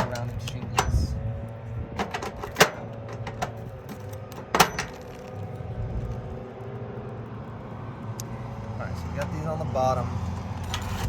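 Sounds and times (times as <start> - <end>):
hand tools clicking and knocking: 0.0 - 1.1, 2.0 - 5.3
steady low hum: 0.0 - 9.2.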